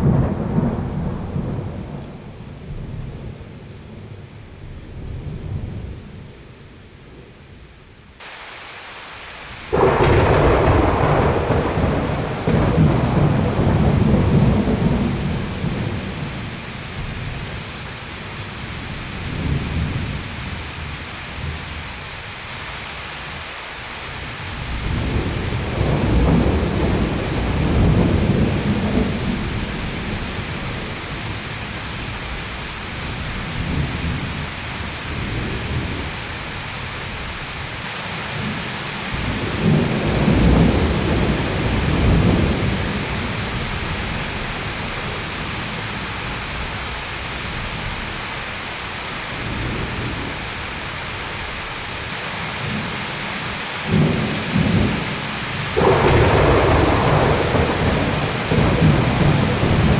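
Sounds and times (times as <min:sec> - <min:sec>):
loud thunderclap: 0:00.0 - 0:06.2, 0:09.7 - 0:17.6, 0:24.6 - 0:36.1, 0:39.1 - 0:46.8, 0:53.9 - 0:59.9
rolling thunder rumble: 0:00.0 - 0:07.8, 0:09.6 - 0:21.8, 0:24.2 - 0:37.8, 0:38.4 - 0:48.2, 0:52.6 - 0:59.9
steady rain: 0:00.0 - 0:59.9.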